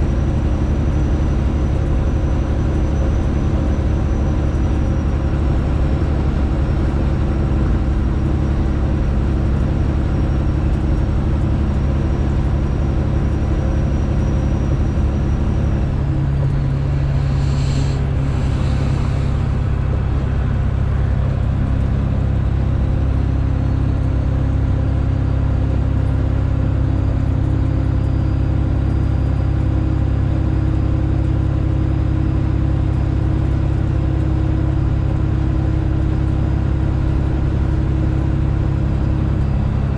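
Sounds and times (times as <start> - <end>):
diesel truck engine droning: 0.0 - 39.9
short hissing bursts: 17.1 - 19.4.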